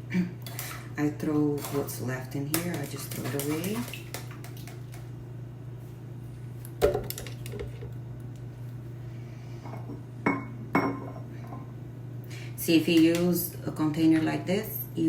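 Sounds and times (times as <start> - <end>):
steady low hum: 0.0 - 15.0
kitchenware knocking and clinking: 6.8 - 7.8, 10.3 - 11.2.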